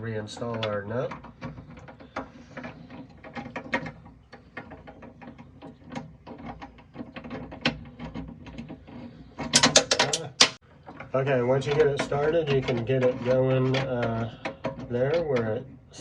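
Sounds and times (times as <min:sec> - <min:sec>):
metal nut clicking and rattling: 0:00.4 - 0:11.1.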